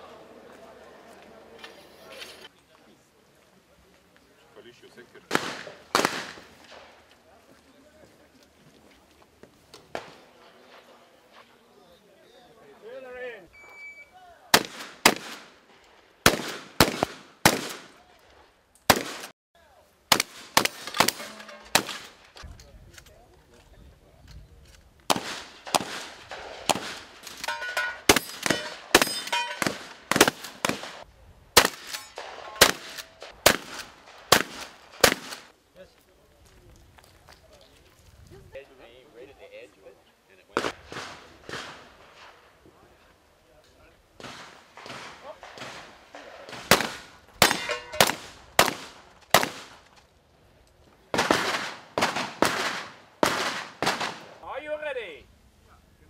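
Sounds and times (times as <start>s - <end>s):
shotgun shots echoing: 5.3s - 7.0s, 14.5s - 15.6s, 16.2s - 18.0s, 18.9s - 19.3s, 20.1s - 22.2s, 25.1s - 31.0s, 31.6s - 35.5s, 44.2s - 49.8s, 51.1s - 54.4s
sharp loud bangs with echo: 20.1s - 22.2s
metallic ringing: 27.5s - 29.7s.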